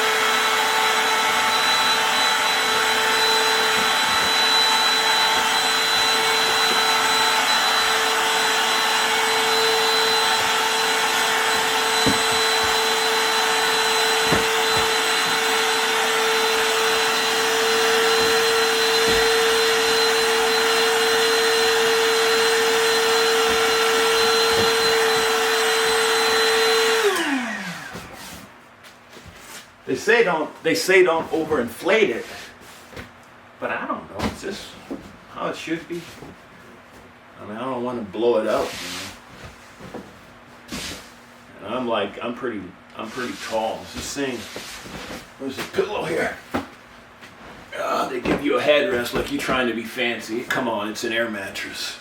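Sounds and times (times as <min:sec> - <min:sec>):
motor winding down: 0:00.0 - 0:27.9
electric air pump humming: 0:00.0 - 0:29.6.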